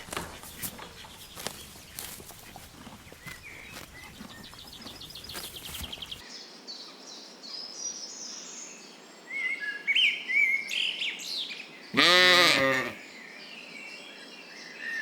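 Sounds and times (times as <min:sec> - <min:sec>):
birds singing: 0:00.0 - 0:15.0.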